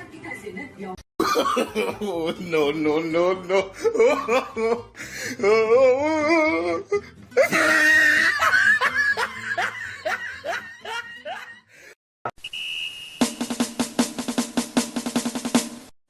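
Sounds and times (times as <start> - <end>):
person laughing: 1.2 - 11.6
short high beep: 12.4 - 13.5
music with fast drum beat: 13.2 - 15.9.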